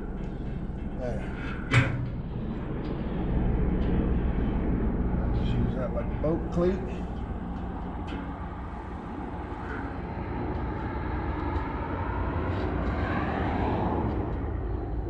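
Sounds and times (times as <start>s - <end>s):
engine drone: 0.0s - 15.0s.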